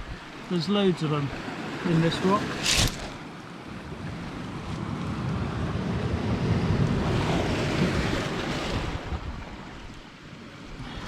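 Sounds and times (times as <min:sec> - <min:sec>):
sea waves washing on shore: 0:00.0 - 0:11.0
wind rumbling on microphone: 0:01.6 - 0:11.0.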